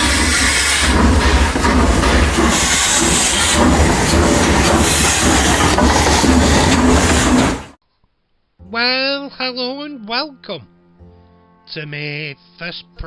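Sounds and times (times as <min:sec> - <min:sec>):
train running along track: 0:00.0 - 0:07.8.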